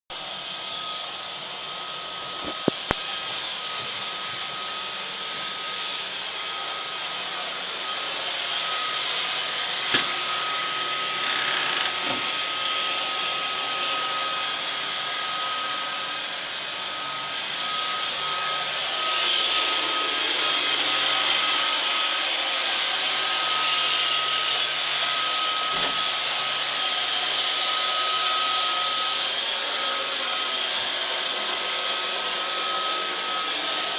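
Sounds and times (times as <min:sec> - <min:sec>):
robot vacuum whirring: 0:00.2 - 0:33.9.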